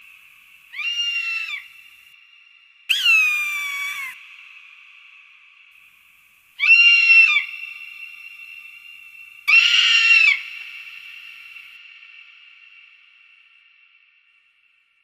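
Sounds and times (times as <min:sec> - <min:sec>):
hawk screaming calls: 0:00.7 - 0:01.7, 0:02.9 - 0:04.2, 0:06.6 - 0:07.6, 0:09.5 - 0:10.5.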